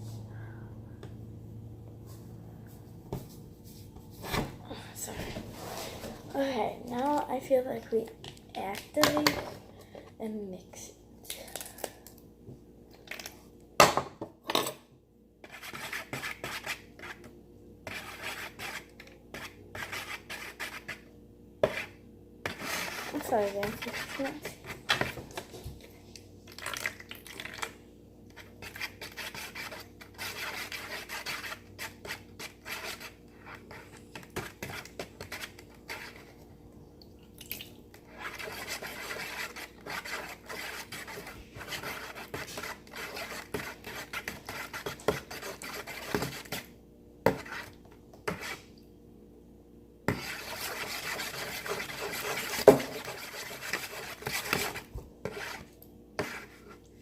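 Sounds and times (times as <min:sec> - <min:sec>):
slime mixing in bowl: 0:21.6 - 0:36.6, 0:37.2 - 0:46.7, 0:47.3 - 0:48.8, 0:50.1 - 0:56.9.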